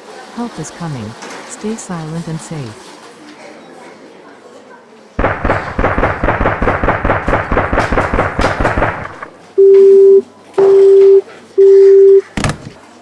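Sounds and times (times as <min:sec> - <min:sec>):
rapid automatic gunfire: 0:05.2 - 0:09.3
phone busy tone beeps: 0:09.6 - 0:12.3.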